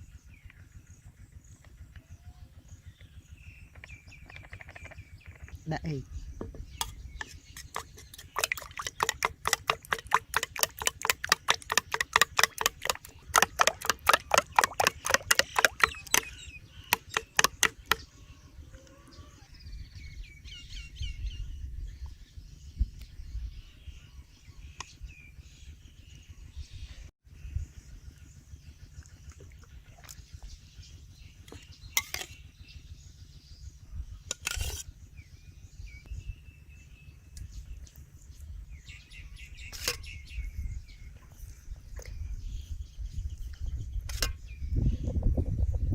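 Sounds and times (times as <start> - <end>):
birds chirping faintly: 0.0 - 45.9
utensil clicking against bowl: 6.8 - 18.0
egg beaten in a bowl: 7.2 - 18.0.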